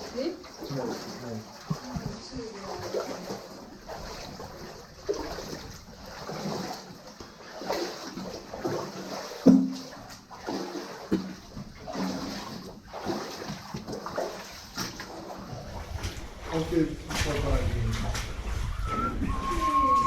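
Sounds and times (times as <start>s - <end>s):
boots splashing through water: 0.0s - 20.0s.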